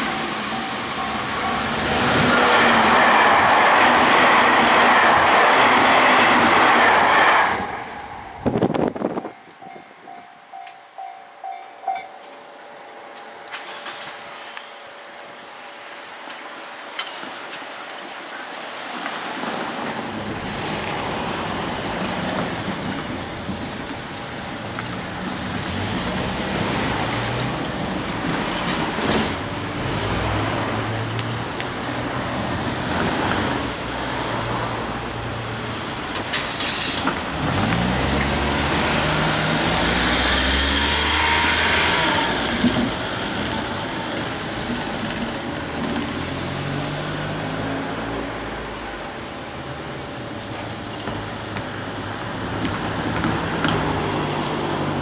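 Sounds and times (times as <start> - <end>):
vehicles passing: 0.0 - 10.0, 19.6 - 55.0
vehicle accelerating: 24.6 - 34.9, 36.5 - 44.0, 45.9 - 48.8.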